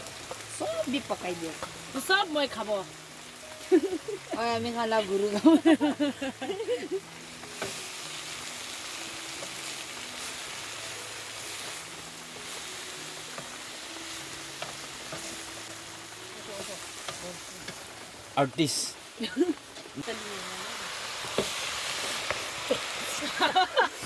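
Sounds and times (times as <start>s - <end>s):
food sizzling in a pan: 0.0s - 24.0s.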